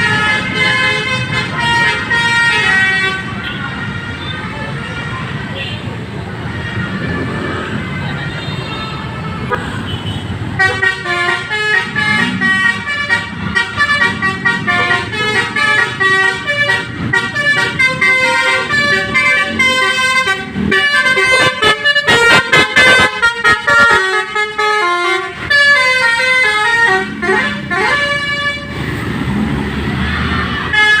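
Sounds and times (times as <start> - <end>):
musical bus air horn tune: 0.0 - 5.8, 8.4 - 28.8, 30.6 - 31.0.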